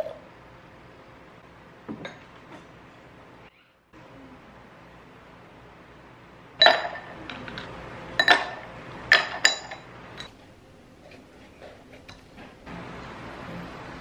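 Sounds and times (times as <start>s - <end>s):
tableware clinking: 1.9s - 2.7s, 6.6s - 10.4s.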